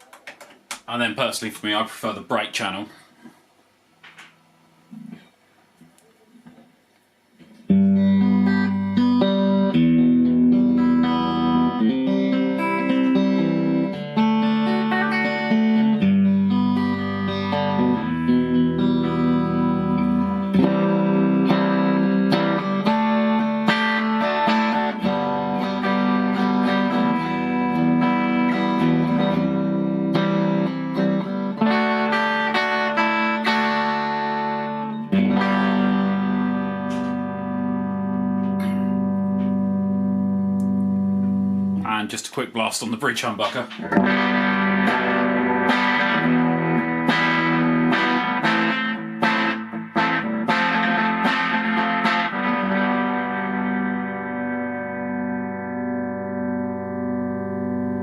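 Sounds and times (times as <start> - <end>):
electric guitar chords ringing: 7.6 - 42.0, 43.5 - 58.0.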